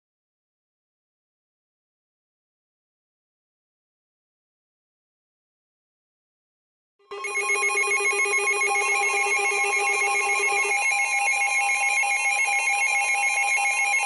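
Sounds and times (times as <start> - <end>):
warbling electronic alert tone: 7.1 - 11.7.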